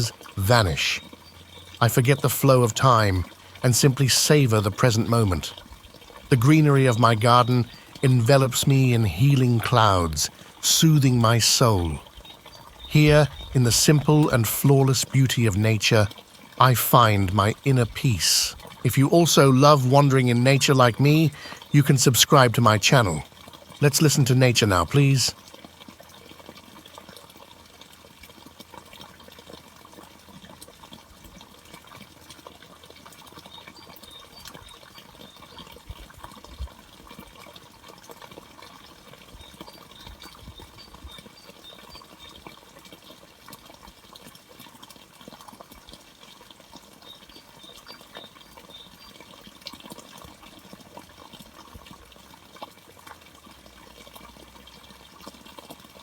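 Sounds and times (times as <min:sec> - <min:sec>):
running water: 0:00.0 - 0:56.0
bird chirping: 0:10.3 - 0:15.8.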